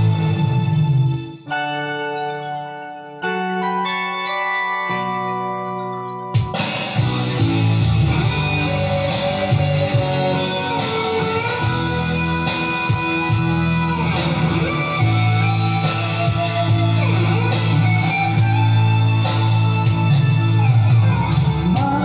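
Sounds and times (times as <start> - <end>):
guitar playing: 0.0 - 22.0
sustained low bass notes: 7.0 - 22.0.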